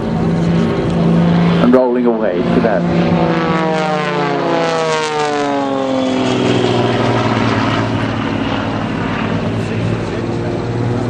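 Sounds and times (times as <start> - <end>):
propeller aircraft flying past: 0.0 - 11.0.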